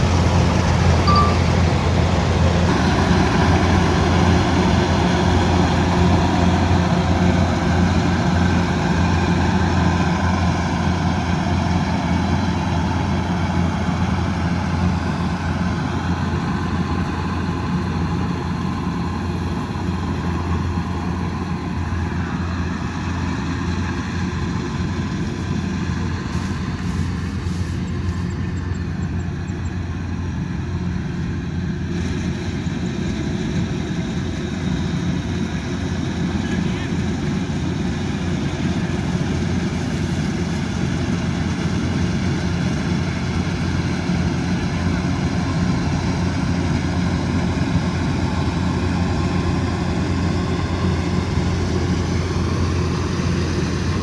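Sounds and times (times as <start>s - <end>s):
diesel engine humming: 0.0s - 54.0s.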